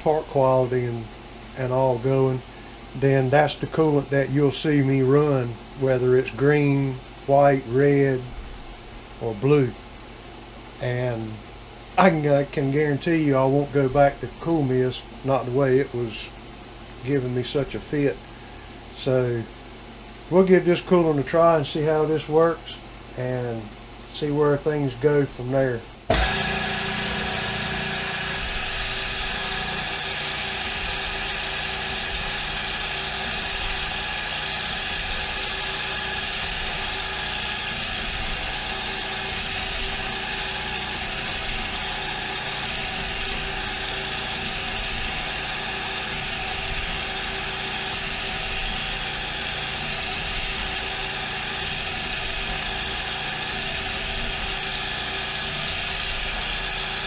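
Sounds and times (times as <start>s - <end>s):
mill spindle gear whine: 24.2s - 57.0s.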